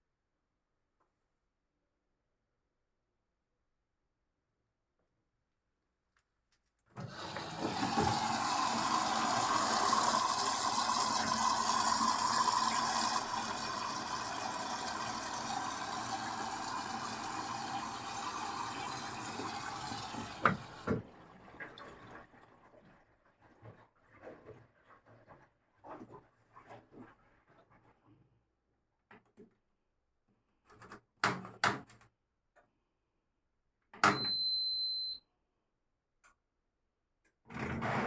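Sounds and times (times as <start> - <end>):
water rushing into washing machine: 7.0 - 27.6.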